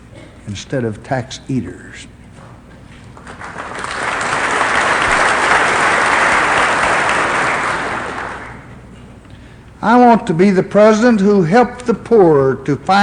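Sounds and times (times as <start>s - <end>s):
audience applauding: 3.1s - 8.7s.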